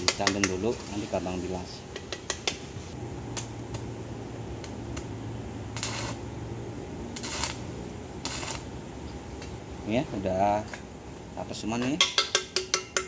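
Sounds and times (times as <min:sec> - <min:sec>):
crackling hiss of welding arc: 0:00.0 - 0:12.3
welding machine humming: 0:02.8 - 0:09.5.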